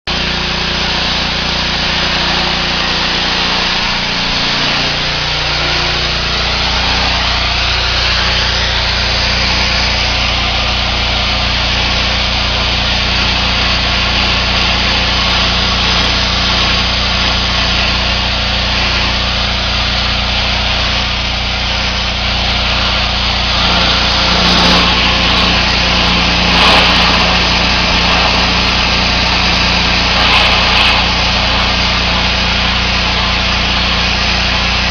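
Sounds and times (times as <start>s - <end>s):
pressure washer engine hum: 0.0s - 34.9s
high-pressure water spray hiss: 13.0s - 34.9s.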